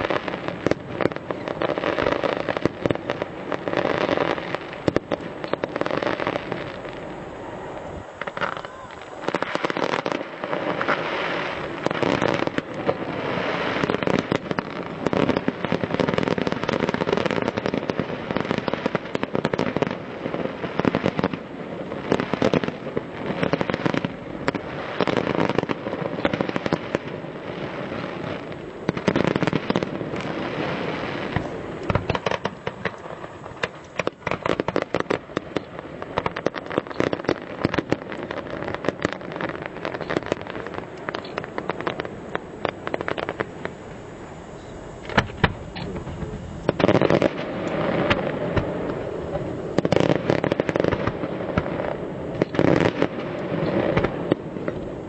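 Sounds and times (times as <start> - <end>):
fireworks bursts and crackling: 0.0 - 55.0.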